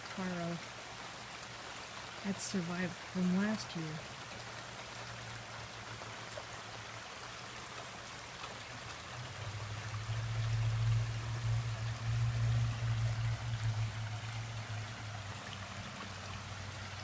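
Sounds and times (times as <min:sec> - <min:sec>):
rain falling: 0:00.0 - 0:17.0
water running over waterfall: 0:00.0 - 0:17.0
low steady hum: 0:08.8 - 0:17.0.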